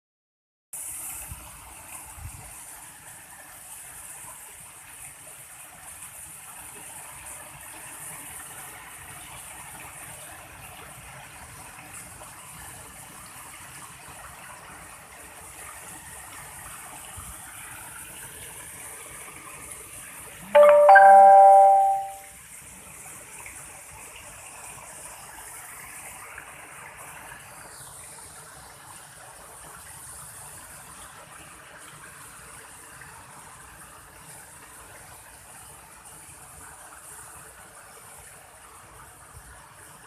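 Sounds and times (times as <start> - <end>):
water splashing down waterfall: 0.8 - 40.0
loud two-note chime: 20.6 - 22.3.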